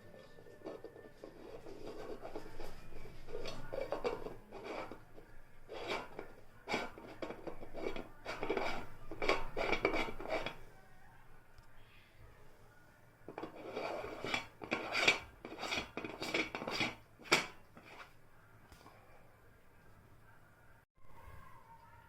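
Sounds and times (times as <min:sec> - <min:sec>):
hard parts scraping and clinking: 0:00.0 - 0:10.6, 0:13.3 - 0:18.1.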